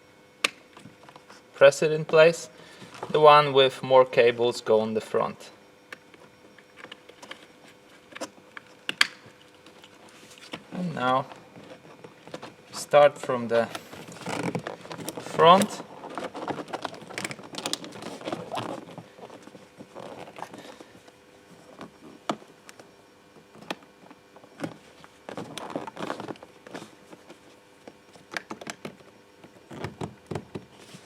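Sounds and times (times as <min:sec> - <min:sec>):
plastic handling noise: 0:13.6 - 0:31.0.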